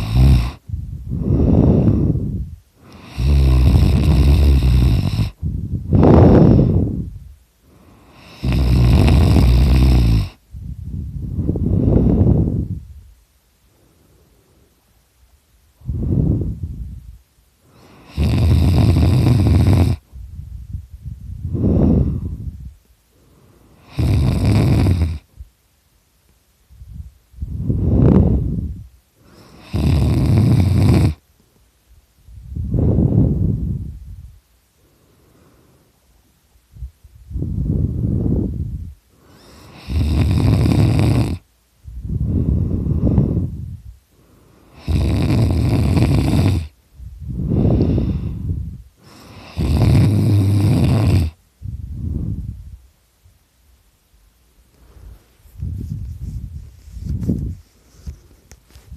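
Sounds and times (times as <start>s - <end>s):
person snoring loudly: 0.0s - 6.8s, 8.1s - 10.4s, 17.7s - 20.0s, 23.8s - 25.2s, 29.3s - 31.2s, 39.3s - 41.4s, 44.7s - 46.8s, 47.4s - 51.4s
rushing breath: 0.7s - 2.5s, 21.4s - 24.1s, 37.3s - 40.2s, 41.8s - 45.3s, 47.2s - 49.8s, 54.7s - 58.5s.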